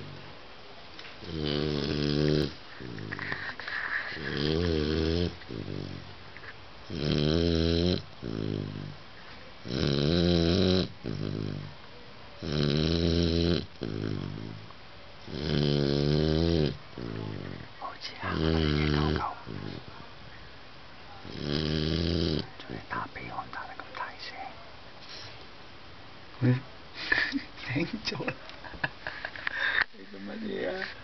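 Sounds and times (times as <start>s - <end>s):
loud snoring: 1.2s - 3.4s, 4.2s - 6.1s, 6.9s - 9.0s, 9.6s - 11.7s, 12.4s - 17.6s, 18.3s - 19.8s, 21.3s - 22.5s
soft breathing: 2.6s - 4.4s.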